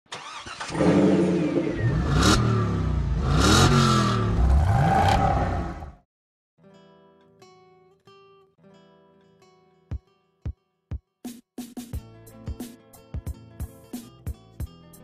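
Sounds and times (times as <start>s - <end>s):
car engine revving hard: 0.2s - 6.0s.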